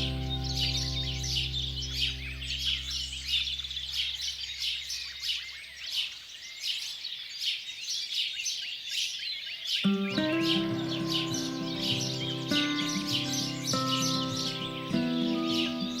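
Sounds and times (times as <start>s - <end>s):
held music chord: 0.0s - 4.2s, 9.9s - 16.0s
songbirds chirping: 0.0s - 16.0s.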